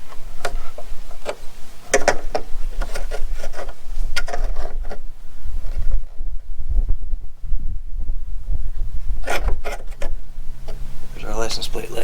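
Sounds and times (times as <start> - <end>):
parts being handled clicking: 0.0 - 5.0
low rumble: 5.0 - 9.3.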